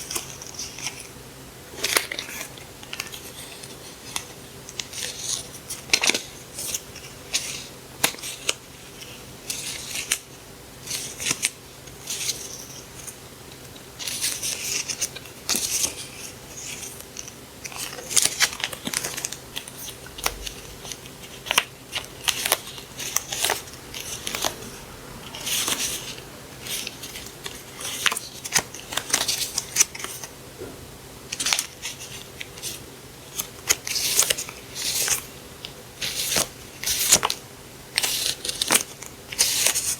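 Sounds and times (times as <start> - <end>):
paper rustling: 14.0 - 30.3.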